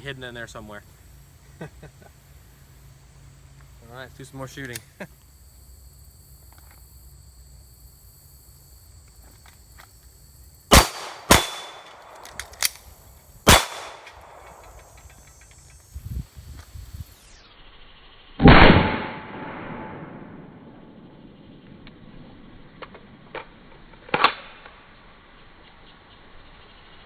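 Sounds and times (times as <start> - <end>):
pistol shots: 10.7 - 15.0.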